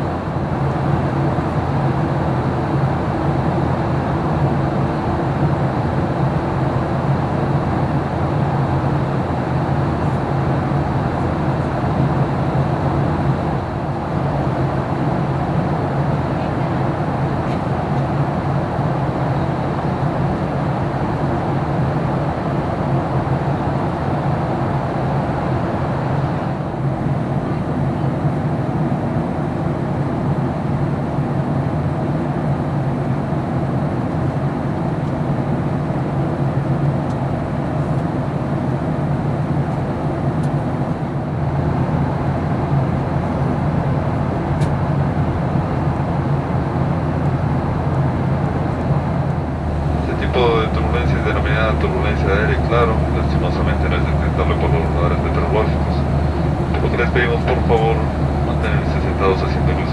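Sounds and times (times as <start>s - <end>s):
airflow over aircraft fuselage: 0.0s - 59.9s
jet engines humming: 33.7s - 59.9s.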